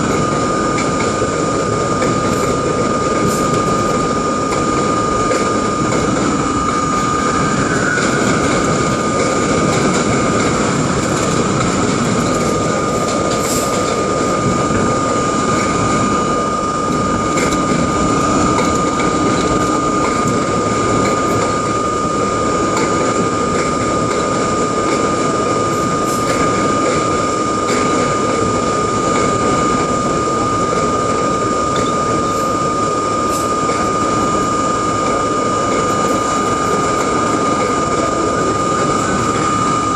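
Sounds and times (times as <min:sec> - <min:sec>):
high-pitched steady tone: 0:00.0 - 0:39.9
subway train rumble and rattle: 0:00.0 - 0:39.9.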